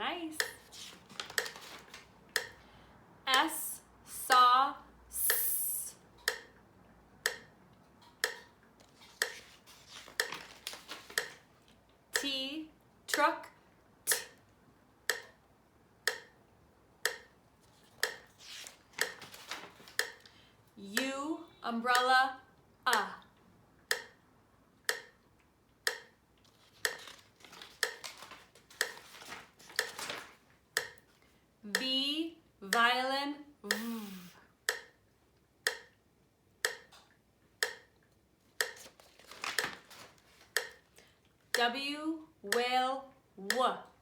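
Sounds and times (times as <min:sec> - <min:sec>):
finger snaps keeping a beat: 0:05.2 - 0:05.6, 0:06.2 - 0:06.6, 0:07.2 - 0:07.6, 0:08.2 - 0:08.5, 0:14.1 - 0:14.4, 0:15.1 - 0:15.4, 0:16.0 - 0:16.4, 0:17.0 - 0:17.3, 0:19.9 - 0:20.2, 0:23.9 - 0:24.2, 0:24.9 - 0:25.2, 0:25.8 - 0:26.2, 0:30.8 - 0:31.0, 0:34.7 - 0:35.0, 0:35.6 - 0:36.0, 0:36.6 - 0:37.0, 0:37.6 - 0:37.9, 0:38.6 - 0:39.8, 0:40.5 - 0:40.8.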